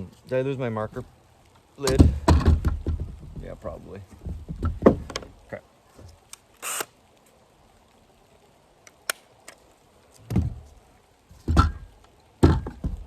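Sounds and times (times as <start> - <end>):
dull thumps: 1.8 - 5.4, 10.2 - 13.0.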